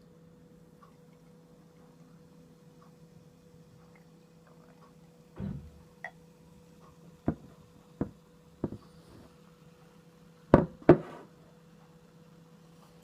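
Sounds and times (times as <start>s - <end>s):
hard objects knocking and clicking: 7.3s - 8.8s.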